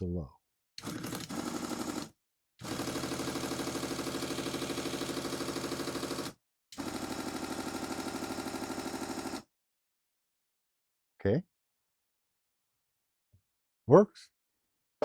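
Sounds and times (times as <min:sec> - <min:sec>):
small electric motor pulsing: 0:00.8 - 0:09.4.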